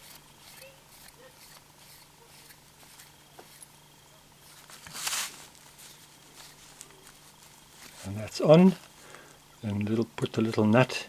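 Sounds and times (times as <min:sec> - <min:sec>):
short rasp: 0:00.0 - 0:03.7.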